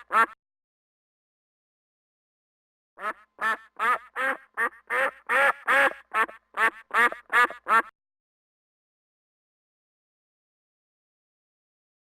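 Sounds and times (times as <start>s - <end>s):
duck quacking: 0.0s - 0.4s, 3.0s - 7.9s.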